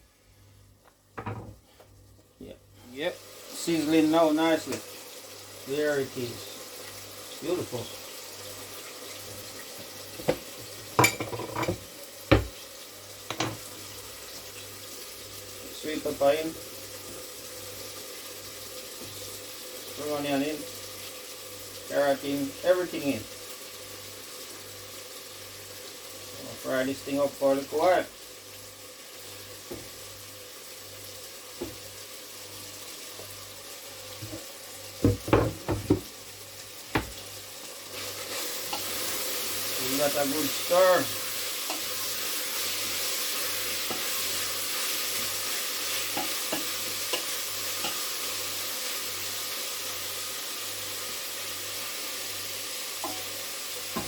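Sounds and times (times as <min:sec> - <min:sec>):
hot oil sizzling in a pot: 0:00.0 - 0:54.0
utensils knocking against a pot: 0:10.2 - 0:12.6.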